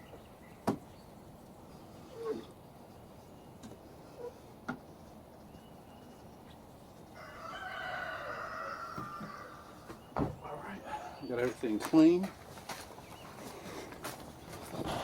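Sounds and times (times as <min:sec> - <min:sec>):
rooster crowing: 0:07.2 - 0:09.9.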